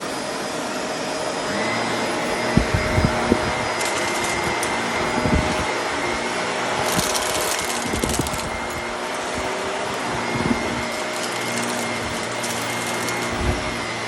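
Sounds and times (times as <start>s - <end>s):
vacuum cleaner running: 0.0s - 14.0s
debris rattling clicks: 3.8s - 5.0s, 6.8s - 10.1s, 10.8s - 13.4s.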